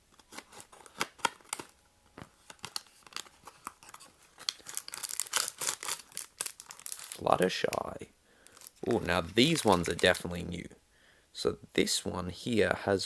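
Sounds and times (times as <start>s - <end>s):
plastic crinkling: 0.0s - 10.2s.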